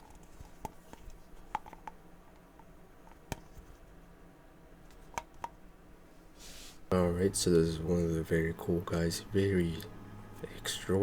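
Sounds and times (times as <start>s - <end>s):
faint background hiss: 0.0s - 11.0s.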